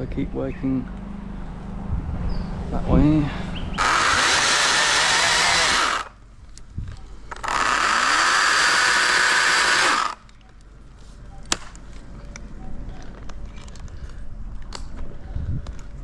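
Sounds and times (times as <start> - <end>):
chainsaw at full throttle: 3.8 - 6.1, 7.3 - 10.2.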